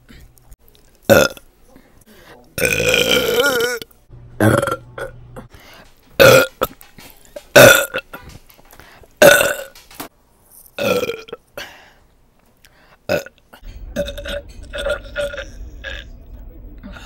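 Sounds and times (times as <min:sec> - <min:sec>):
woman burping loudly: 0:01.1 - 0:01.4, 0:02.6 - 0:05.5, 0:07.5 - 0:08.2, 0:09.2 - 0:09.7, 0:10.8 - 0:11.4, 0:13.1 - 0:16.1.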